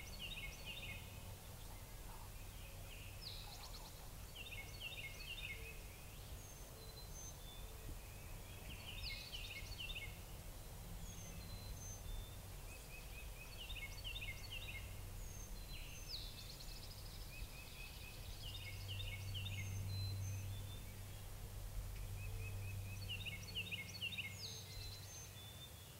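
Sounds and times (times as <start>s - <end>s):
faint low rumble: 0.0s - 25.5s
songbirds singing: 0.0s - 25.9s.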